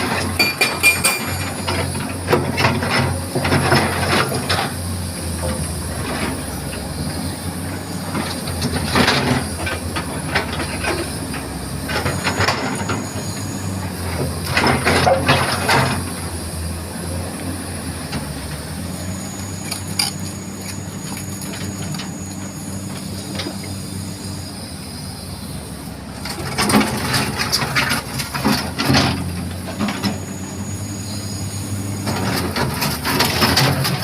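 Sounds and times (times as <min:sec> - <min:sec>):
metallic clanking and scraping: 0:00.0 - 0:04.8, 0:19.5 - 0:23.7, 0:32.0 - 0:34.0
excavator diesel engine running: 0:00.0 - 0:34.0.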